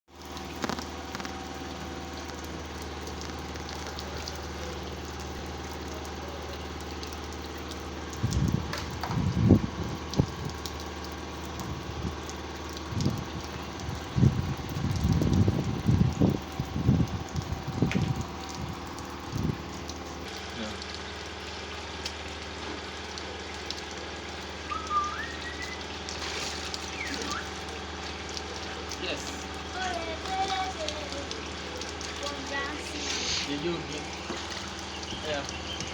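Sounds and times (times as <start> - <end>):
fountain water splashing: 0.1 - 35.9
pump hum: 0.1 - 35.9
brief rising whistle: 24.7 - 25.8.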